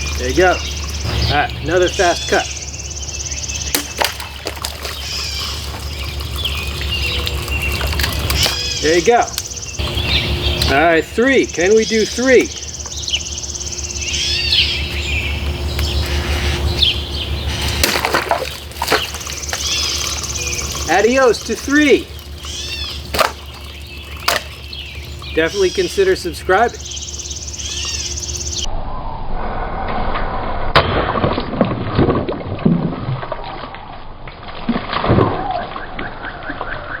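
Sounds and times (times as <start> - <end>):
birds chirping: 0.0 - 28.7
water splashing and sloshing: 0.0 - 28.7, 30.8 - 37.0
steady low hum: 0.0 - 30.8
sharp crack: 3.7 - 4.9
knife slashing through bottles: 3.7 - 6.0, 17.5 - 20.6.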